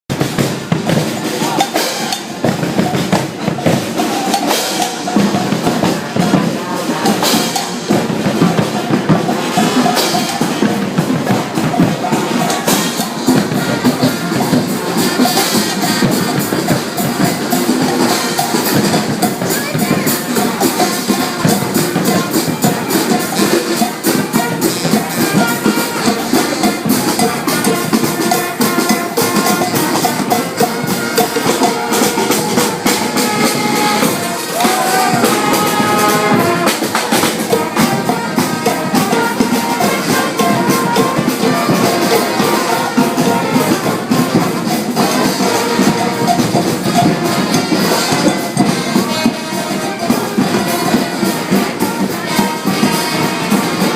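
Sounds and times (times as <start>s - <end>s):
drum and percussion beat: 0.0s - 53.9s
marching band playing: 0.1s - 53.9s.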